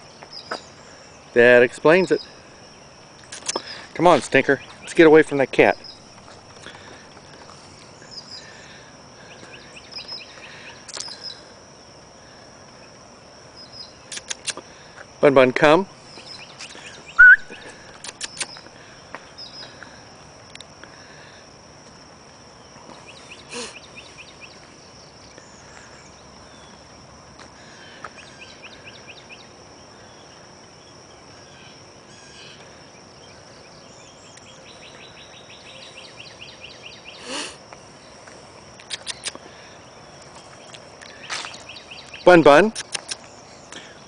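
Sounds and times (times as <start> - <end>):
insects trilling: 0.0 - 44.0
rapid chirping pulses: 16.2 - 18.7.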